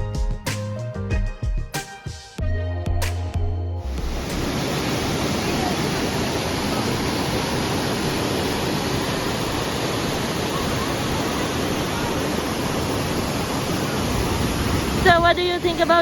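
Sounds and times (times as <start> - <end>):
waterfall roaring: 3.9 - 16.0.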